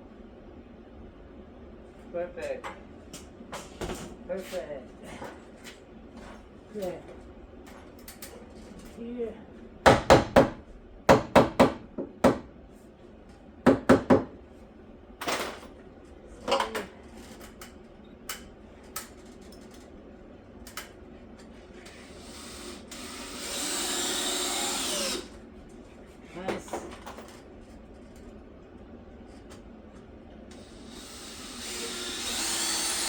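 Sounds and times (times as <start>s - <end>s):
power drill running: 21.9s - 25.4s, 30.5s - 33.0s.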